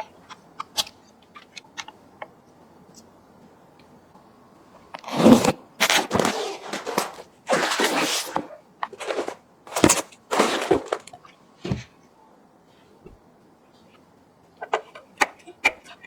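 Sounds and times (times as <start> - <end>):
plastic crinkling and rustling: 5.0 - 11.9.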